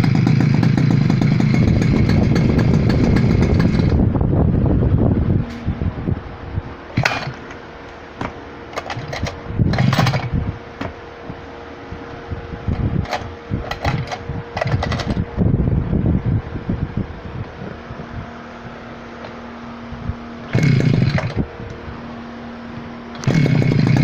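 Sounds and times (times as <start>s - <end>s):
brush cutter engine idling: 0.0s - 4.6s, 6.9s - 15.6s, 20.4s - 22.0s, 22.7s - 24.0s
wind gusts: 1.2s - 23.4s.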